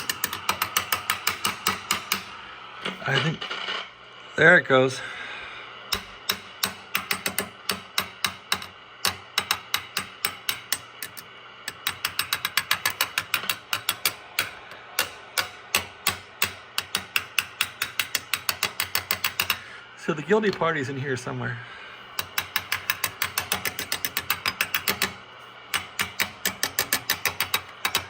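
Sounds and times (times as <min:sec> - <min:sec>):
screwdriver tapping metal clicks: 0:00.0 - 0:02.4, 0:05.9 - 0:19.6, 0:22.2 - 0:28.0.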